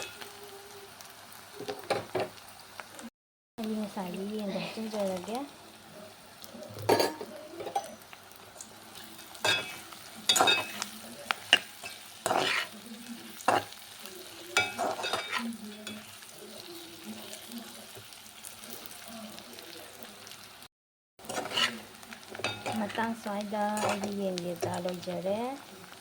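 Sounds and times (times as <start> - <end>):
faint frying sizzle: 0.0 - 26.0
spoon scraping a pan: 9.0 - 18.0, 21.2 - 25.1.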